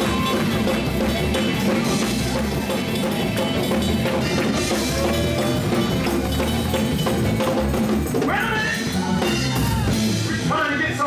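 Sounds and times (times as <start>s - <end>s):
live band music: 0.0s - 11.0s.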